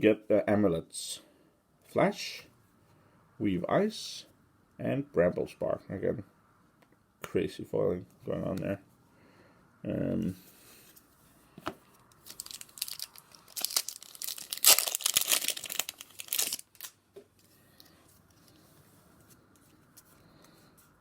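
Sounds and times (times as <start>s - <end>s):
wrapper tearing and crinkling: 12.2s - 17.0s.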